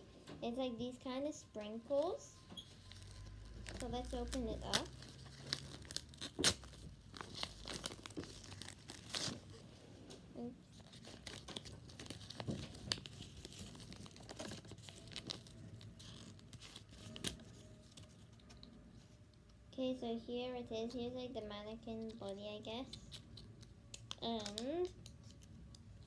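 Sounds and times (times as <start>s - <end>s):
plastic bag crinkling: 2.7s - 9.7s, 10.7s - 18.7s.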